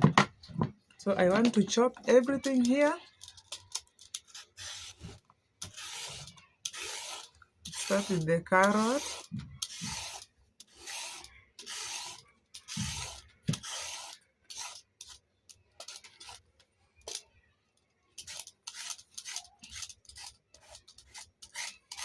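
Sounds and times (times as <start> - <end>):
carrot being scraped: 4.3 - 15.2.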